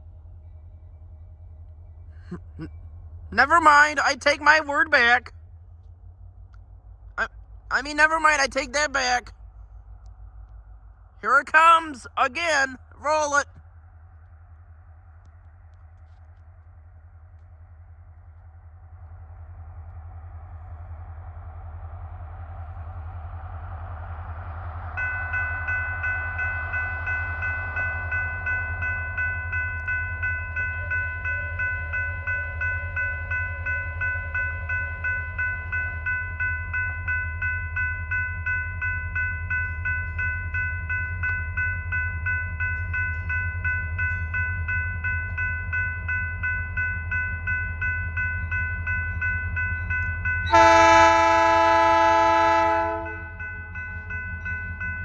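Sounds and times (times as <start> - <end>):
diesel locomotives rumbling: 0.0 - 55.0
crossing bell ringing: 3.3 - 5.3, 7.2 - 9.4, 11.2 - 13.5, 25.0 - 55.0
locomotive air horn: 50.5 - 53.3.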